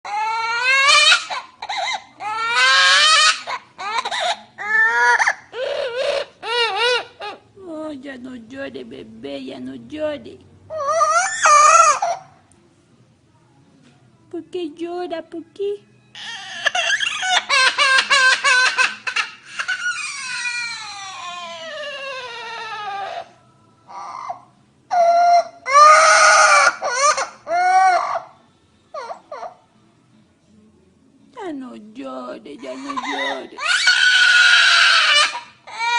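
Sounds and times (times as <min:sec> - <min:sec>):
parrot mimicking baby crying: 0:00.0 - 0:07.5, 0:10.7 - 0:12.4, 0:16.1 - 0:29.6, 0:32.6 - 0:35.9.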